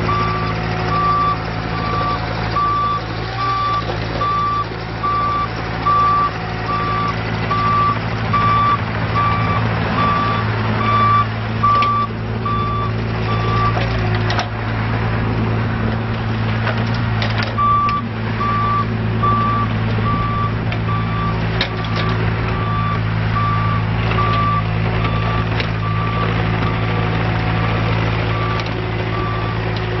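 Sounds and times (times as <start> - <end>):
excavator travel alarm beeping: 0.0 - 13.9, 17.5 - 26.9, 28.2 - 29.8
diesel engine running: 0.0 - 30.0.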